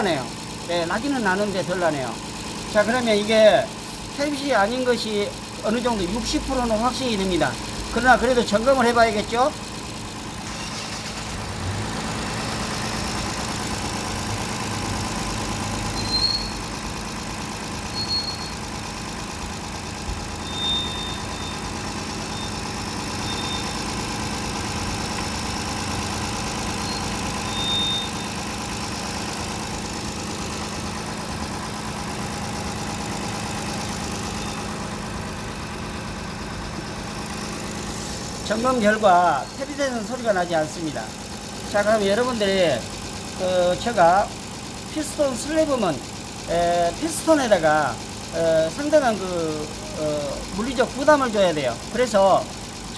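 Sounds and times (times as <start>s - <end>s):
engine idling with light tapping: 0.0s - 52.9s.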